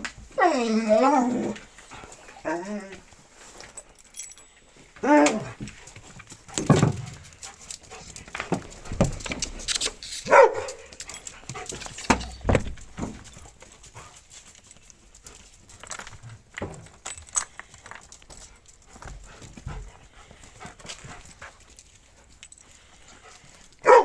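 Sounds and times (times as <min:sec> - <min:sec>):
dog whining: 0:00.3 - 0:01.6, 0:02.4 - 0:03.0, 0:05.0 - 0:05.6.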